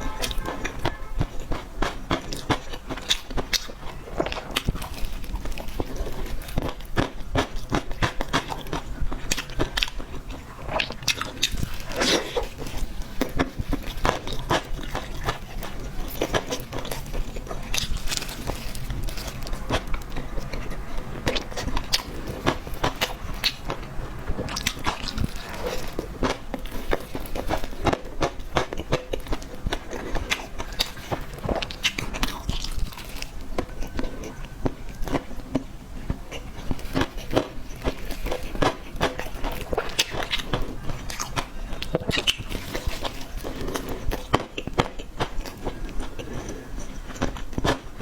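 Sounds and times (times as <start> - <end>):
chewing and biting cake: 0.0 - 48.0.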